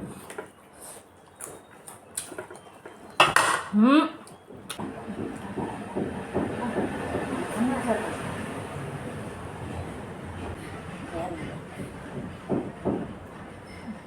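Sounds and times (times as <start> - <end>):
cutlery and dishes clinking: 3.2 - 3.8.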